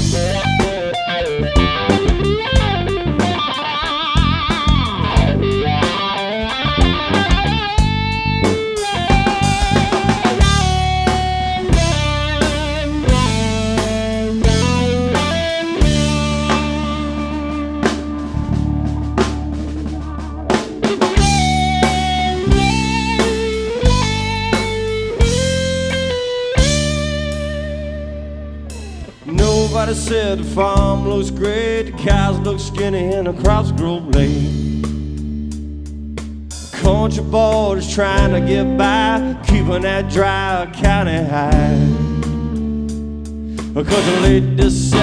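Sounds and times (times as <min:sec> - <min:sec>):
electric guitar solo: 0:00.0 - 0:29.3
bass guitar: 0:00.0 - 0:45.0
drum kit: 0:00.0 - 0:45.0.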